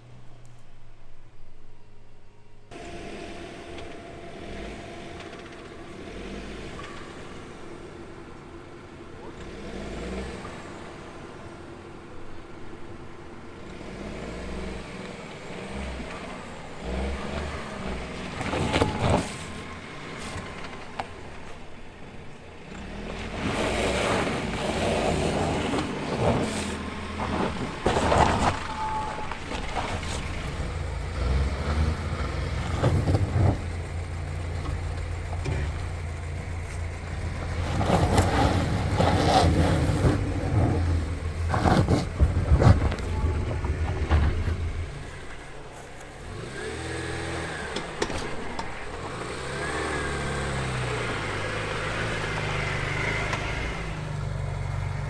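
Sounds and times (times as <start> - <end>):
car engine rumbling under load: 0.0 - 55.0
vehicle knocking on rough ground: 23.4 - 45.6.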